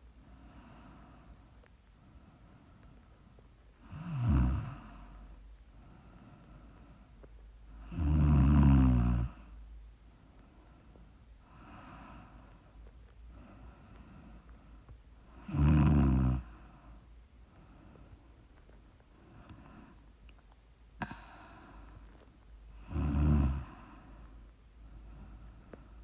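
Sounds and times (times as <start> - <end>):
quiet breaths: 0.0 - 26.0
woman snoring: 3.9 - 5.0, 7.8 - 9.4, 15.4 - 16.5, 22.8 - 24.0.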